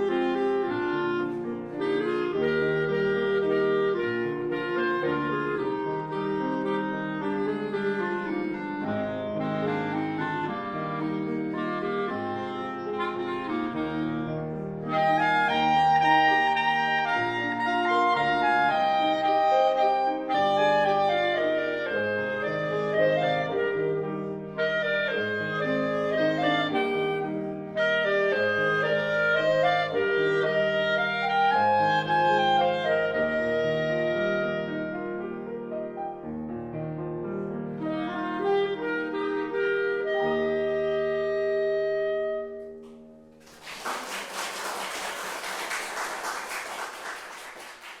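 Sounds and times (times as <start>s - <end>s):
two clarinets playing in harmony: 0.0s - 43.1s
audience applause: 43.4s - 48.0s.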